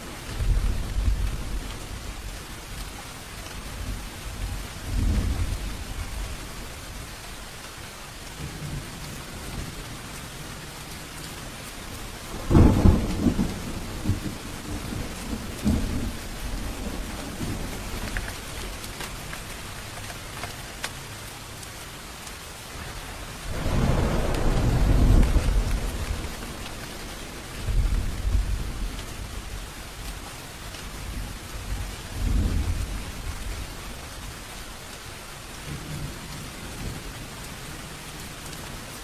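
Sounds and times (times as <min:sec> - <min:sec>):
thunder rumbling: 0:00.0 - 0:07.5, 0:08.1 - 0:21.0, 0:22.7 - 0:34.9
steady rain falling: 0:00.0 - 0:39.0
loud thunderclap: 0:12.3 - 0:18.4, 0:23.4 - 0:29.5.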